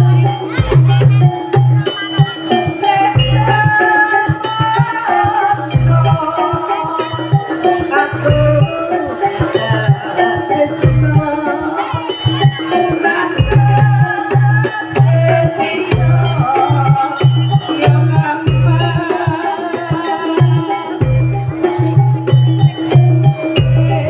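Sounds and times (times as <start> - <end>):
hand drums playing: 0.0 - 24.0
melodic instrument lines: 0.0 - 24.0.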